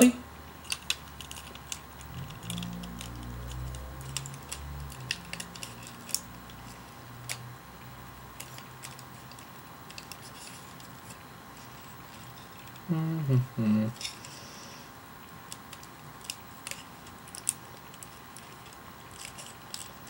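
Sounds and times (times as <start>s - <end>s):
low hum: 0.2s - 9.4s.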